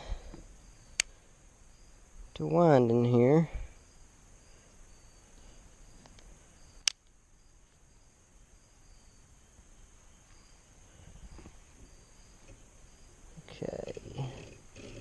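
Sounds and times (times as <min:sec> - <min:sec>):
faint insect chirping: 0:00.0 - 0:15.0
sharp click: 0:06.8 - 0:07.1.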